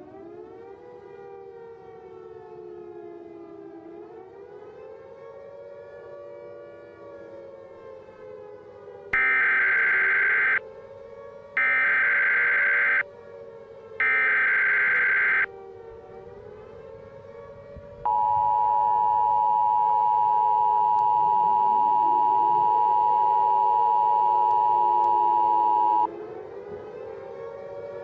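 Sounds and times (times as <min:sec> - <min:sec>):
harsh digital data burst: 0:09.2 - 0:10.6, 0:11.6 - 0:13.0, 0:14.0 - 0:15.5
two-tone attention signal: 0:09.2 - 0:10.6, 0:11.6 - 0:13.0, 0:14.0 - 0:15.5
wavering siren: 0:09.2 - 0:10.6, 0:11.6 - 0:13.0, 0:14.0 - 0:15.5.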